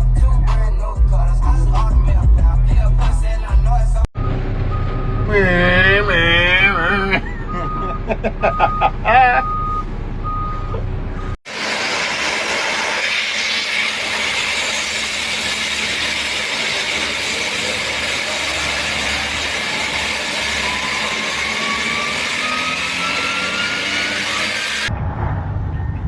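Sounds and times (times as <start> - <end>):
heavy vehicle engine and machinery: 0.0 - 26.0
reversing alarm beeping: 4.2 - 6.3, 7.2 - 11.4, 18.9 - 24.7
person speaking: 5.3 - 7.7.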